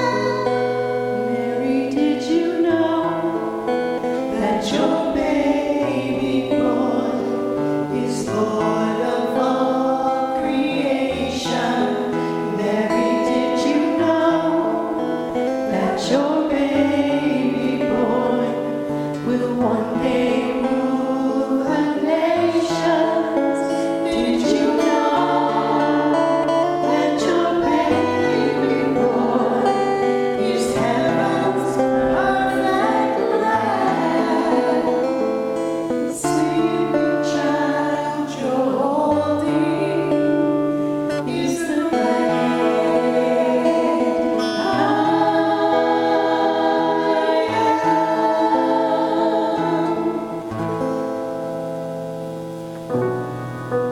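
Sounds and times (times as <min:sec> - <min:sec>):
guitar accompaniment: 0:00.0 - 0:53.9
person singing worship music: 0:00.0 - 0:53.9.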